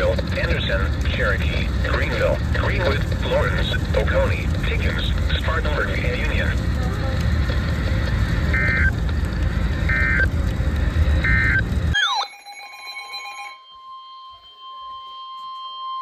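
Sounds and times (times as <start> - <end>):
radio static: 0.0 - 12.0.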